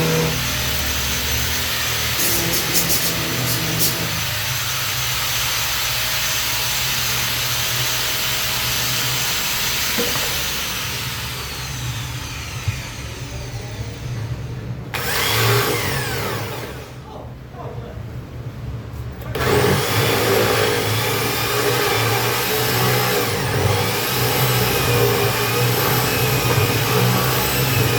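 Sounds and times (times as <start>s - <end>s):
power tool whining: 0.0s - 17.0s, 19.3s - 27.9s.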